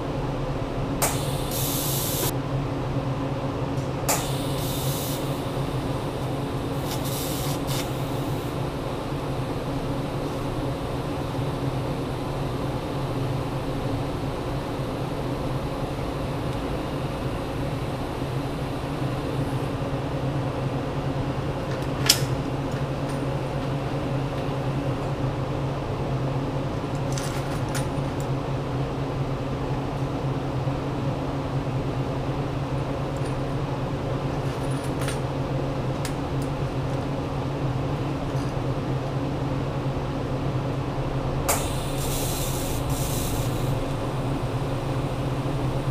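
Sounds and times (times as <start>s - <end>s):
small electric motor humming: 1.1s - 2.3s, 4.3s - 19.7s.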